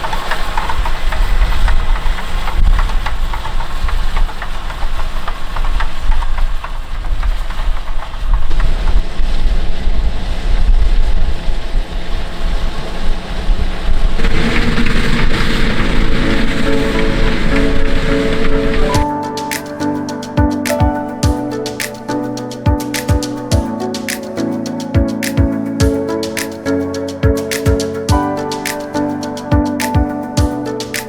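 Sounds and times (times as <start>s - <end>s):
music: 15.9s - 31.0s.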